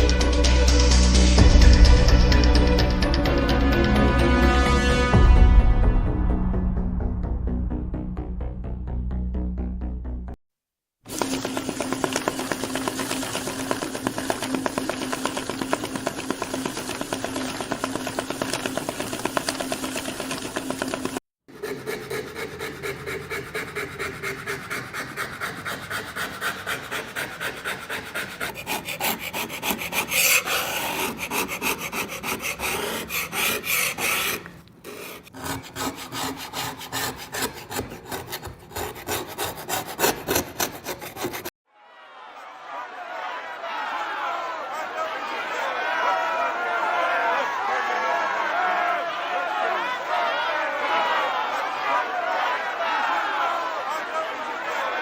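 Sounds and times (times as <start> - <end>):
rhythmic rasping filing strokes: 11.2 - 41.5.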